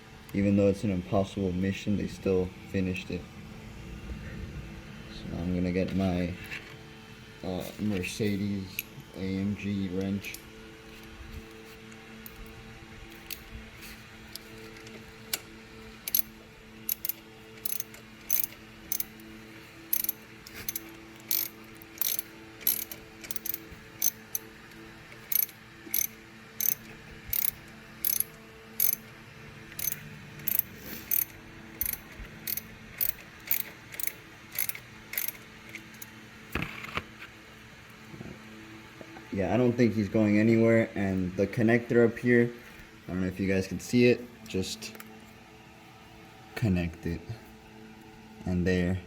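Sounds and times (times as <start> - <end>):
ratchet wrench clicking: 13.1 - 13.5, 16.0 - 19.2, 19.9 - 24.4, 25.2 - 29.1, 29.7 - 36.1.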